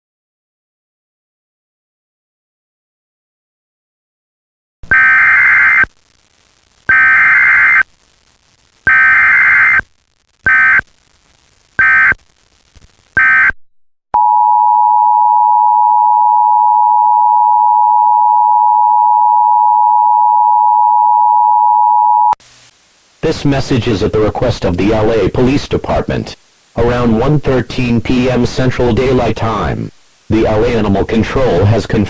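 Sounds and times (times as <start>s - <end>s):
warbling data tone bursts: 4.9s - 5.9s, 6.9s - 7.8s, 8.9s - 9.8s, 10.4s - 10.8s, 11.8s - 12.2s.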